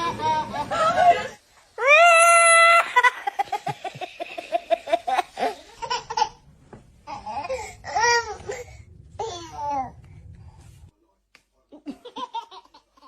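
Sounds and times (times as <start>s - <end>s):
baby laughing: 2.8s - 6.5s.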